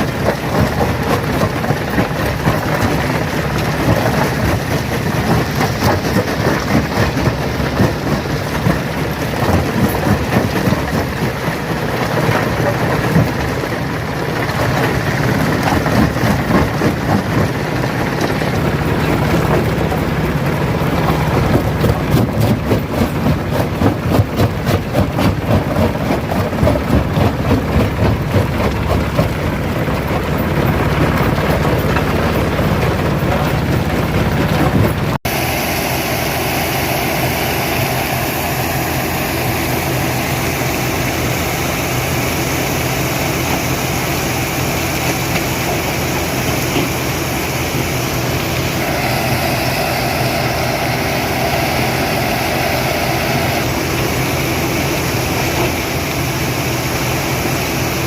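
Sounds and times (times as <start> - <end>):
rock crusher crushing stone: 0.0 - 35.2
steady machine noise: 0.0 - 58.0.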